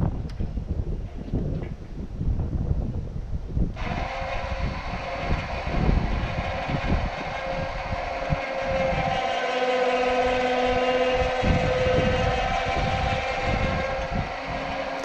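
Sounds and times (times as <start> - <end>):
sawmill machinery rumbling: 3.8 - 15.0.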